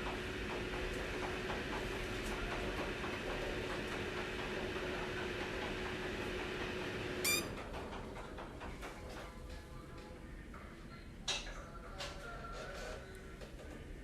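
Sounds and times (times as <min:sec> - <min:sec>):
power supply high-pitched squeal: 0:07.2 - 0:07.5
low electrical hum: 0:07.2 - 0:07.7.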